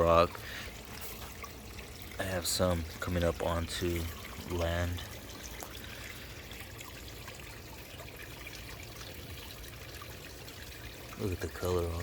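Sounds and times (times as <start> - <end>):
water trickling over rocks: 0.0 - 12.0.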